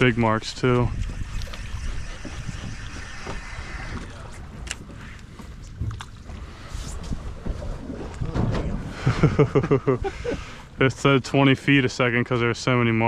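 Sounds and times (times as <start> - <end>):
wind on microphone: 0.0 - 6.0
low steady boat rumble: 0.0 - 13.0.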